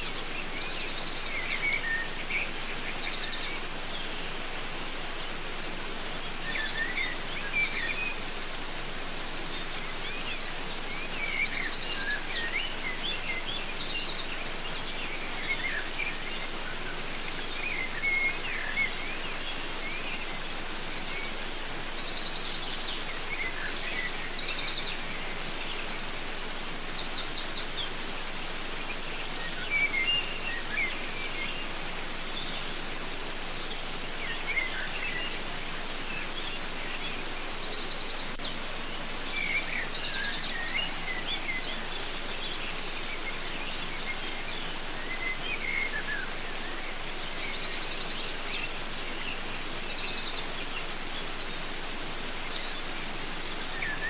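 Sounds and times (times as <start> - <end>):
waterfall rushing: 0.0 - 54.0
birds chirping and whistling: 6.3 - 8.4, 33.5 - 51.9.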